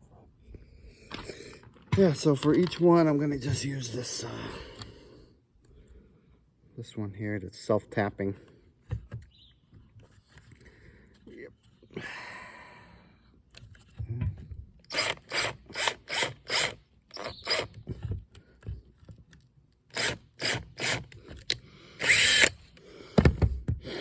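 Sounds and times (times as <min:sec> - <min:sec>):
cordless drill driving screw: 0:14.9 - 0:17.8, 0:19.9 - 0:22.8.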